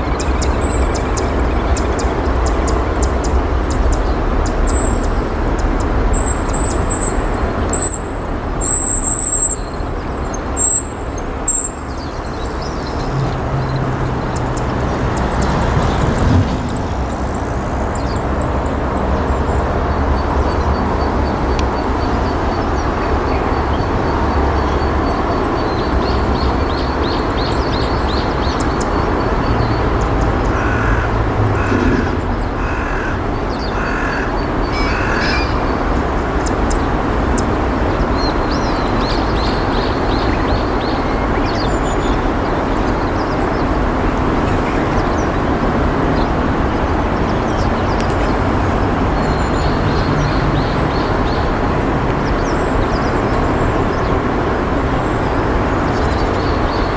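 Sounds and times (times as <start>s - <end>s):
steady rushing noise: 0.0s - 56.9s
bird harsh calls: 29.9s - 36.9s.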